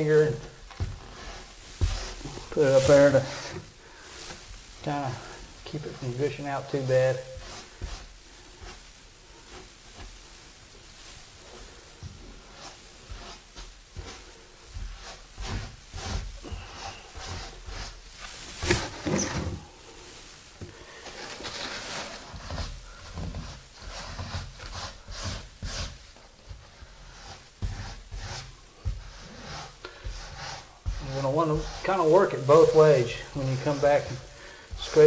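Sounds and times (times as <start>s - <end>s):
trowel scraping tile: 18.6s - 19.6s.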